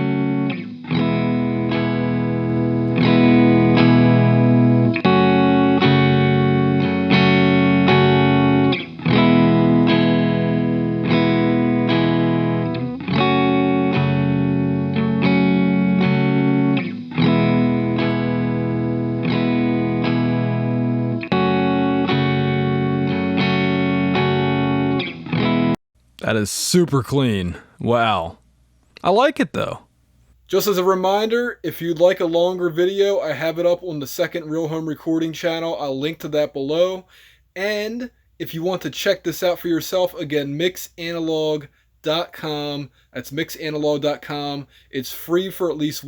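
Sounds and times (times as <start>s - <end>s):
overdriven electric guitar strumming: 0.0s - 25.7s.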